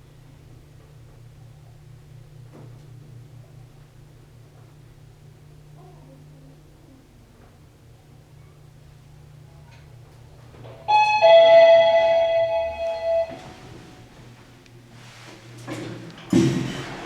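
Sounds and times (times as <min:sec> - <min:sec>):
low steady hum: 0:00.0 - 0:17.0
elevator two-note chime: 0:10.9 - 0:14.1.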